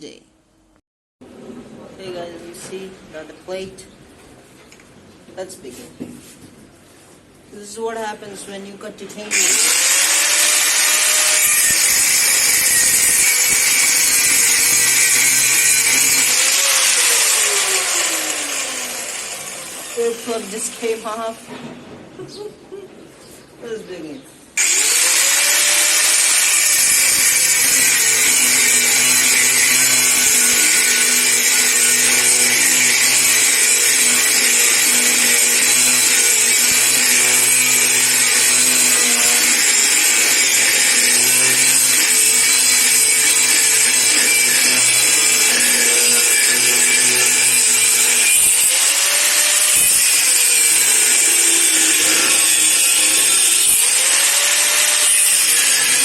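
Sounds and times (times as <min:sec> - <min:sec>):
power tool grinding metal: 0:09.3 - 0:21.4, 0:24.6 - 0:56.0.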